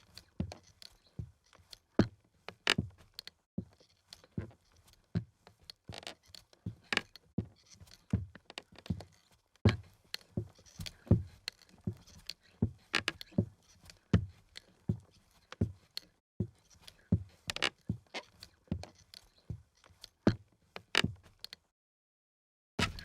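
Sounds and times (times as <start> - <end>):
flip-flop footsteps on wooden floor: 2.0 - 3.7, 4.3 - 20.4.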